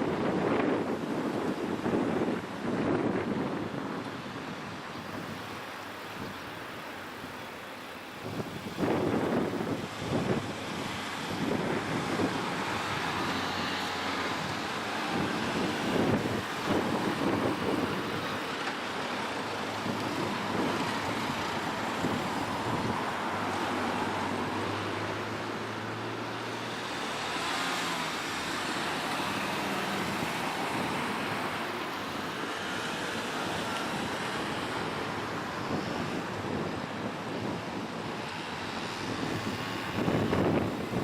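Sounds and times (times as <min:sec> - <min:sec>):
cars driving past: 0:08.3 - 0:41.0.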